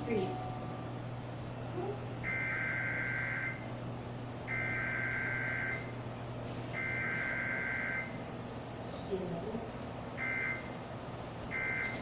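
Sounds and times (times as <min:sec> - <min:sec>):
faint low hum: 0:00.0 - 0:12.0.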